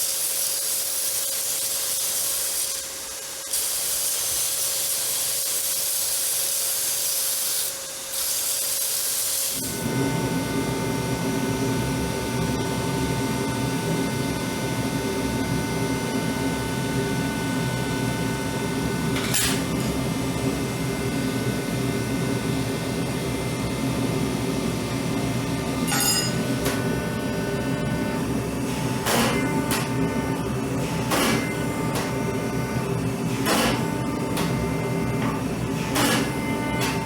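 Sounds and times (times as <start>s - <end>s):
forging machine rumbling: 17.8s - 22.2s, 24.6s - 37.0s
ringing metal clink: 25.9s - 26.4s.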